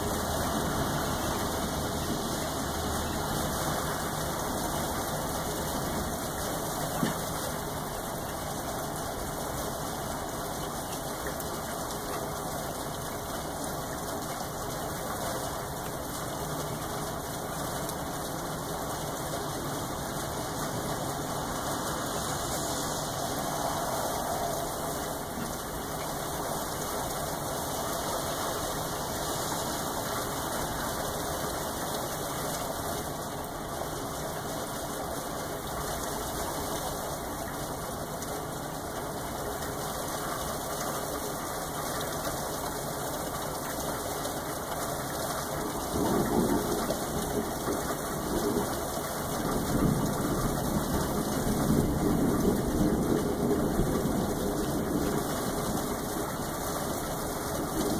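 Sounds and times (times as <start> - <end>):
steady rain falling: 0.0 - 57.9
thunder rumbling: 19.8 - 27.5, 45.7 - 57.9.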